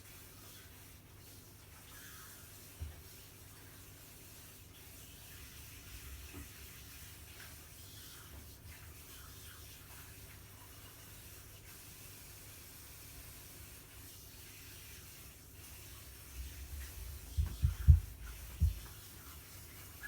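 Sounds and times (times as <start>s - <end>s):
room hiss: 0.0s - 20.0s
short dull thumps: 17.3s - 19.0s.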